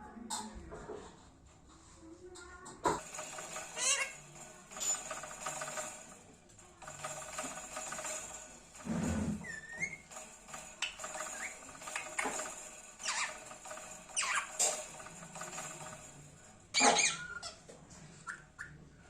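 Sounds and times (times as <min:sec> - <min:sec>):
parrot chirps and clicks: 0:10.8 - 0:13.5, 0:16.7 - 0:18.8.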